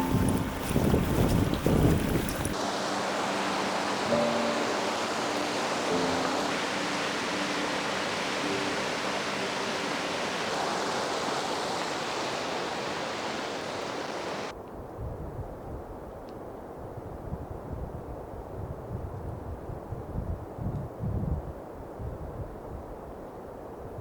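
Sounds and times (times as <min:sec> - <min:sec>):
wind buffeting microphone: 0:00.0 - 0:02.6, 0:04.1 - 0:24.0
fast-flowing water rushing: 0:00.0 - 0:14.5
faint background music: 0:01.9 - 0:10.6.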